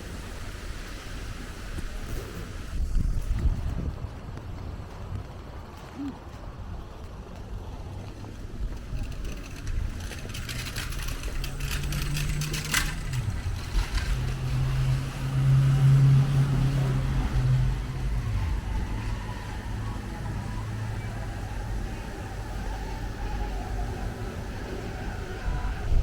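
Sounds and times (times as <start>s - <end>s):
vehicle engine humming: 7.1s - 26.0s
scattered clicks: 8.6s - 14.4s.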